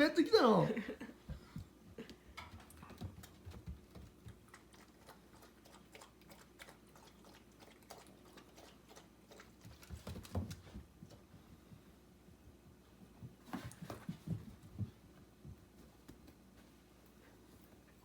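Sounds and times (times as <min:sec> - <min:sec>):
puppy paws clicking and scuffing: 0:09.4 - 0:11.5, 0:13.0 - 0:18.0.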